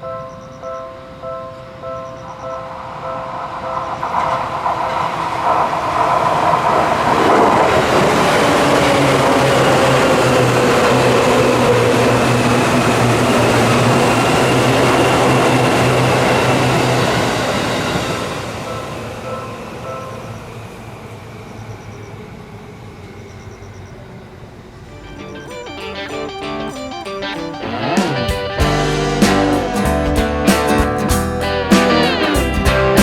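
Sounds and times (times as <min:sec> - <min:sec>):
electric train passing: 0:00.0 - 0:33.0
crossing bell dinging: 0:08.8 - 0:20.6, 0:24.9 - 0:29.9.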